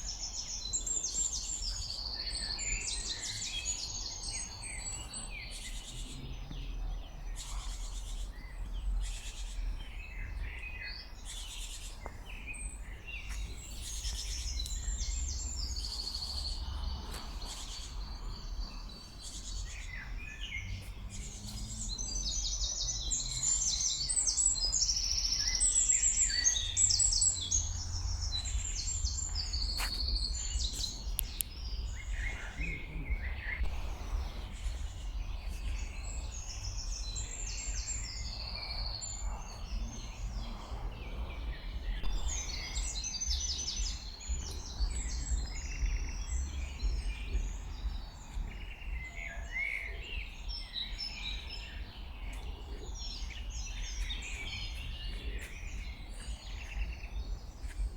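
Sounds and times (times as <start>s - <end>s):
songbirds singing: 0.0s - 57.9s
steady low rumble: 12.7s - 57.9s.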